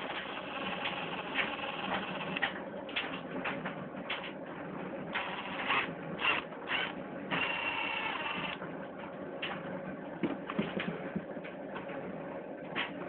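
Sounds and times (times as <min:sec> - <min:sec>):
cordless drill motor whining: 0:00.0 - 0:02.4, 0:05.2 - 0:08.6.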